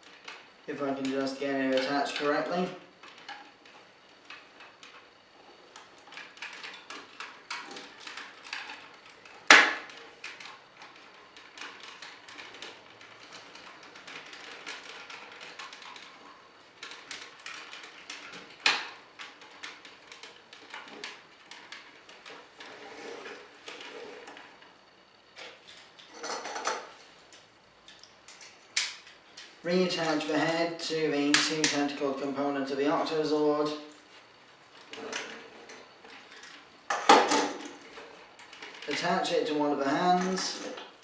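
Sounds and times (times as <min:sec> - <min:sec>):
plastic toy clicks and rattles: 0:00.0 - 0:24.7, 0:34.8 - 0:41.0.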